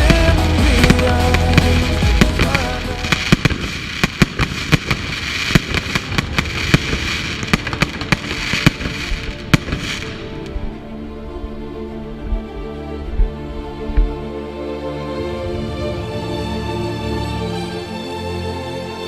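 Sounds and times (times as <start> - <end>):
fireworks bangs and crackles: 0.0 - 10.5
calm music: 0.0 - 19.0.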